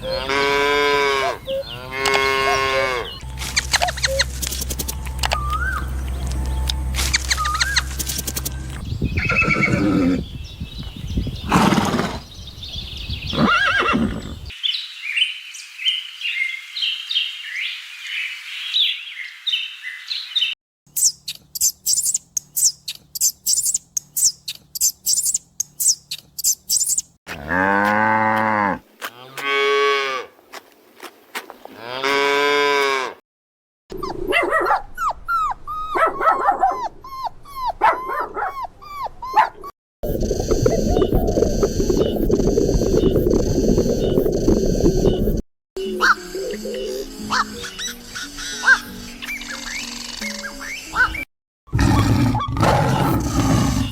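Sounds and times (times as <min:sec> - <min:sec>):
farm animals calling: 0:00.0 - 0:08.0, 0:09.1 - 0:10.4
long low arching animal calls: 0:09.2 - 0:10.3, 0:51.7 - 0:53.9.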